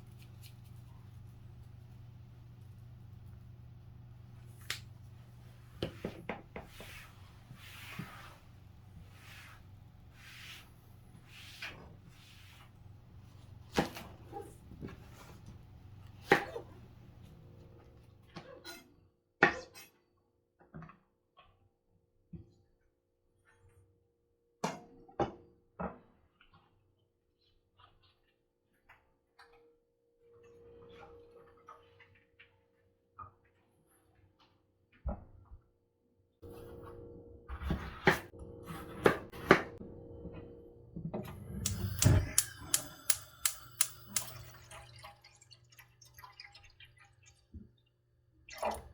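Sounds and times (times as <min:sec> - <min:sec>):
steady hum: 0:00.0 - 0:17.8, 0:41.2 - 0:44.8.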